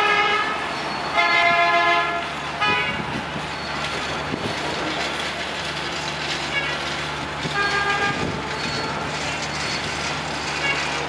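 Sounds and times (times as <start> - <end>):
vehicle horn honking: 0.0 - 0.6, 1.2 - 3.0, 7.5 - 9.1
engine hum: 0.0 - 11.0
traffic noise: 0.0 - 11.0.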